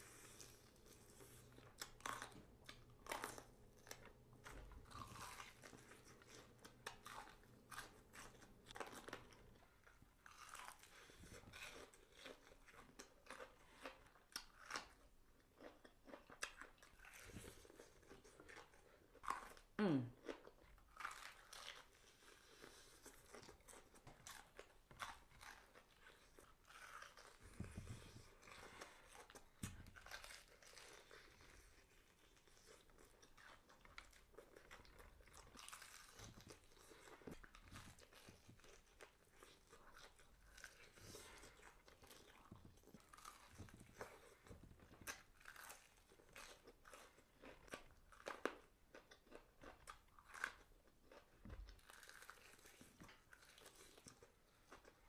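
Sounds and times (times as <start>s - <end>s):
person chewing food: 0.0s - 55.0s.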